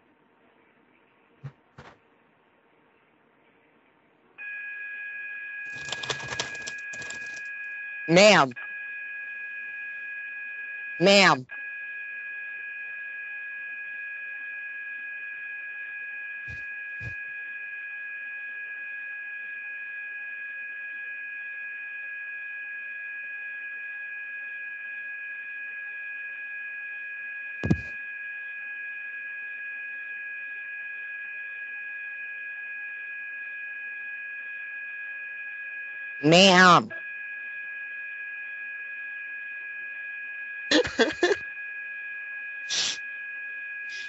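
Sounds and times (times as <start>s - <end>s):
short knock: 1.4s - 2.0s, 27.6s - 27.9s.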